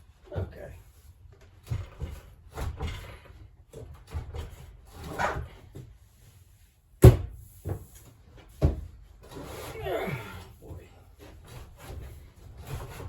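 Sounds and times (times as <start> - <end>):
refrigerator bumping and scraping: 1.6 - 5.8, 7.0 - 13.0.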